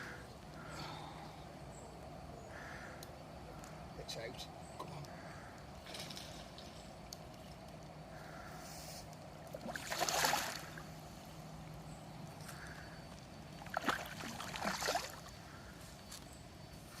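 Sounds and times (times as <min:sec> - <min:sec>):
fish splashing in water: 0:09.5 - 0:10.9, 0:13.5 - 0:15.4.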